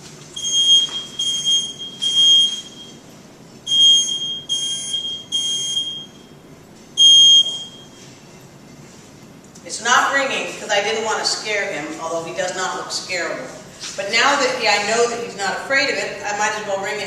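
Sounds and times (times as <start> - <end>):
smoke alarm beeping: 0.4 - 6.4, 7.0 - 8.0.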